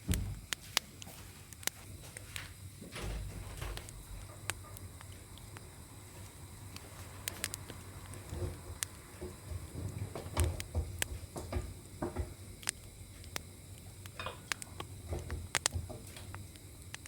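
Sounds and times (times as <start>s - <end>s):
kitchen utensils clicking and knocking: 14.2s - 16.4s.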